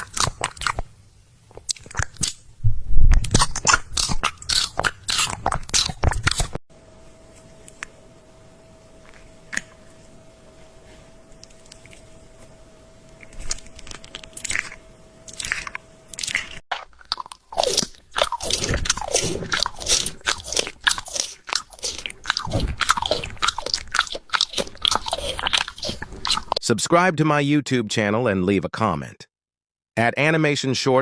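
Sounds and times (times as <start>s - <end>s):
crunchy chewing: 0.0s - 0.9s, 1.5s - 2.5s, 3.1s - 6.6s, 9.0s - 10.1s, 11.3s - 26.6s
faint steady hum: 0.0s - 26.6s.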